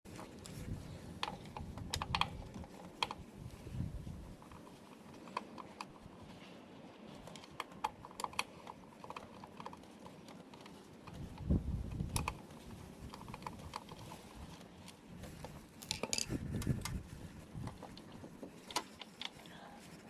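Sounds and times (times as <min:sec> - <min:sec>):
small hard objects clicking: 0:15.8 - 0:17.0.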